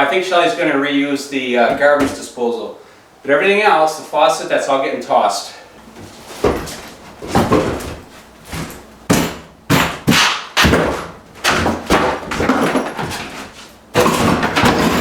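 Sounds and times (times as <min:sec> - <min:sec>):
knocks on kitchen cabinets: 0:06.4 - 0:08.0, 0:08.6 - 0:13.2.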